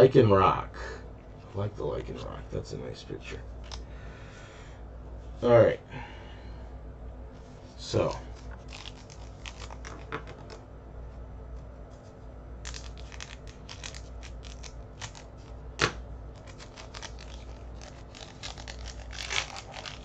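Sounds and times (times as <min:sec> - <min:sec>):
cards crinkling and rustling: 0:07.8 - 0:10.6, 0:12.6 - 0:20.0.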